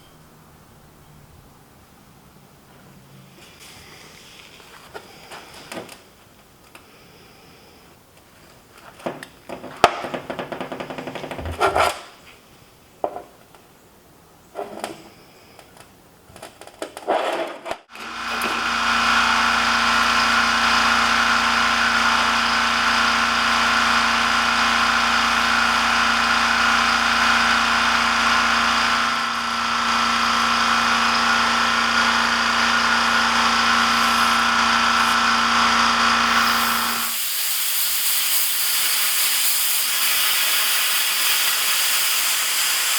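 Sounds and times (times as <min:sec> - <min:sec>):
power tool running: 0:17.9 - 0:42.9.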